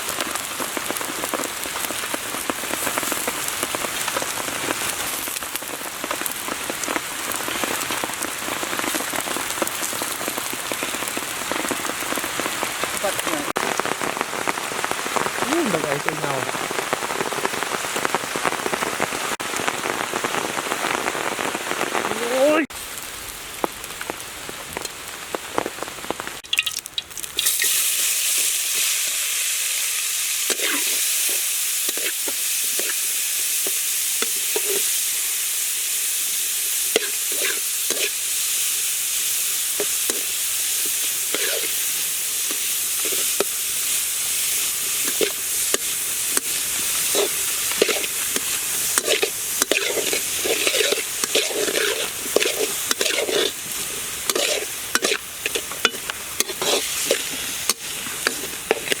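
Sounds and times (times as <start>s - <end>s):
food sizzling in hot oil: 0.0s - 59.0s
stirring clicks and scrapes: 45.0s - 59.0s.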